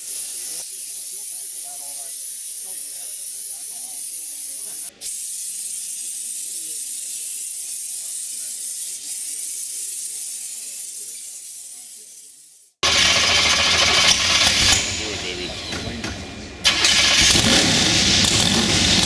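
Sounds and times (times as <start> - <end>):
murmur of voices: 0.0 - 12.5, 13.8 - 16.7.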